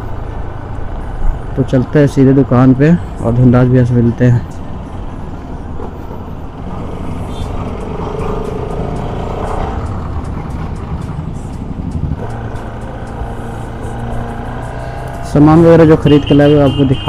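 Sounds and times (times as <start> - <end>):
wind and road noise: 0.0 - 17.0
motorcycle engine running: 5.7 - 15.8.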